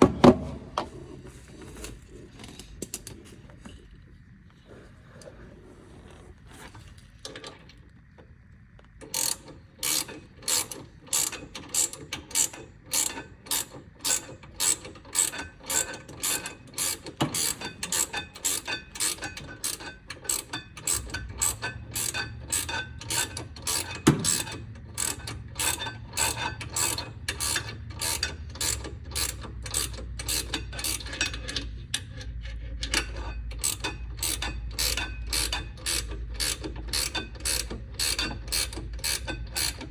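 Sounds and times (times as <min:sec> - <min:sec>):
ratchet wrench clicking: 0:09.1 - 0:32.1, 0:32.9 - 0:39.9.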